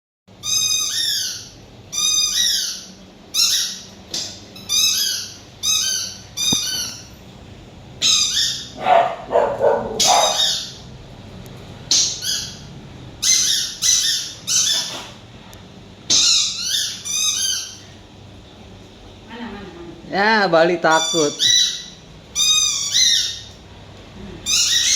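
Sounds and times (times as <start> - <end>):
dog toy squeaking: 0.4 - 3.8, 4.6 - 7.1, 8.0 - 8.7, 10.0 - 10.8, 13.2 - 15.0, 16.1 - 17.8, 20.9 - 21.8, 22.4 - 23.4, 24.5 - 24.9.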